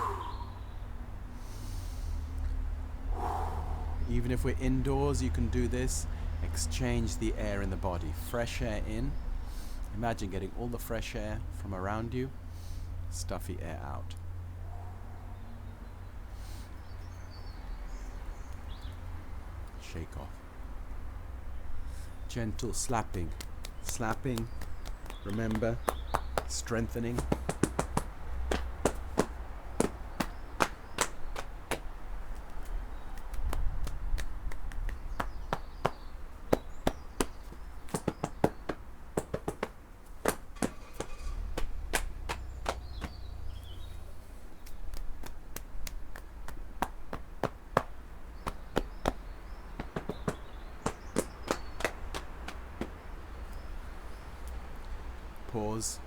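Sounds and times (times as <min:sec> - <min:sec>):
hands slapping body: 0:23.0 - 0:43.3, 0:44.6 - 0:53.7.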